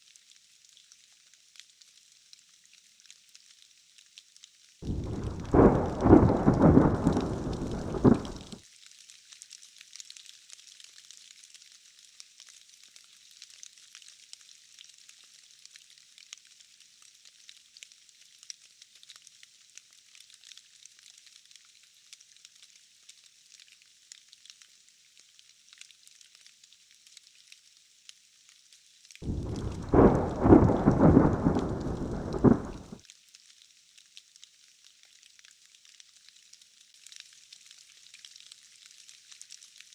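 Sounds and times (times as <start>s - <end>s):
steady rain hiss: 4.8s - 8.6s, 28.0s - 33.0s
thunder rumbles: 4.8s - 8.6s, 29.2s - 33.0s.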